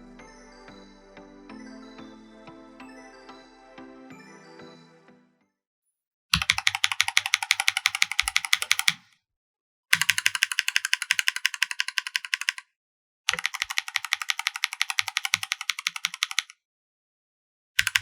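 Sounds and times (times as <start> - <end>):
rapid typing on mechanical keyboard: 6.4 - 9.0, 10.0 - 12.6, 13.3 - 16.6, 17.8 - 18.0.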